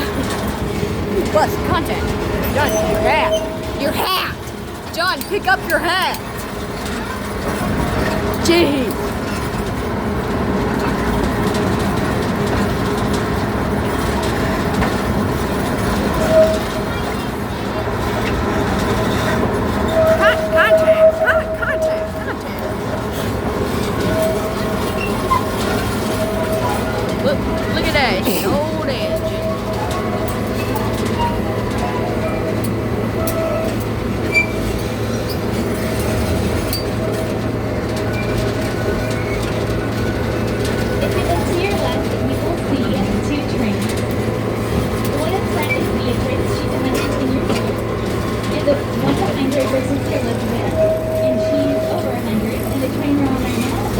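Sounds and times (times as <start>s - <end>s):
ride train rumbling on track: 0.0s - 53.9s
wheels clicking on rails: 0.0s - 53.9s
high squeak: 2.5s - 4.4s, 19.1s - 22.7s.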